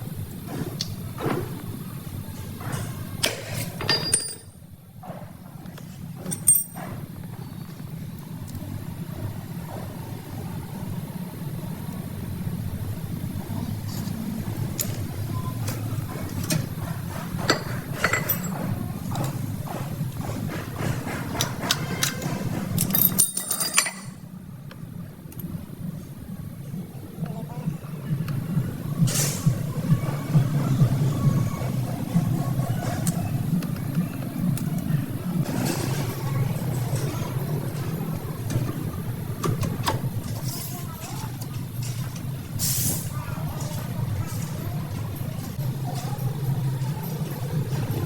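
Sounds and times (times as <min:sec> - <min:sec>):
metallic clinks of tools: 0:03.8 - 0:04.6, 0:06.2 - 0:06.9, 0:22.8 - 0:24.2.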